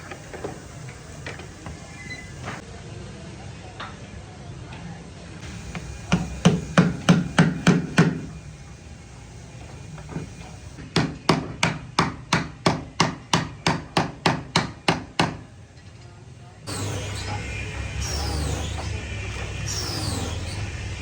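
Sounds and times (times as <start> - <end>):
hammer striking wood: 5.5 - 8.3, 10.2 - 15.4.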